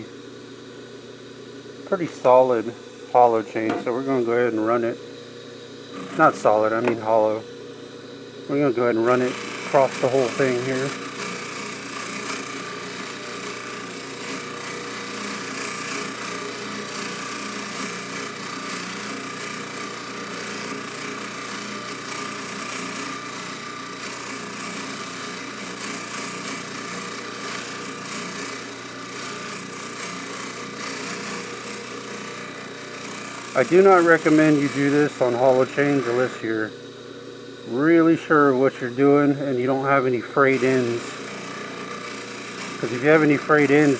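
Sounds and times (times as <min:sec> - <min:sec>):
buffing machine motor hum: 0:00.0 - 0:43.9
chain rubbing on polishing wheel: 0:42.8 - 0:43.9.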